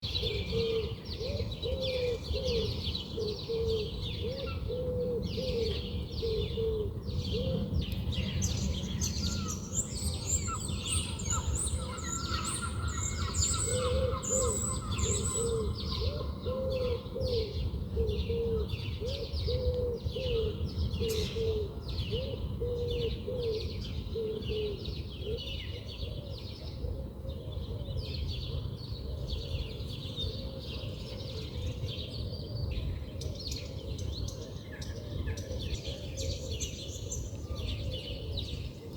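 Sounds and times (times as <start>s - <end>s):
birds chirping: 8.2s - 17.2s
low arched bird notes: 8.6s - 17.5s.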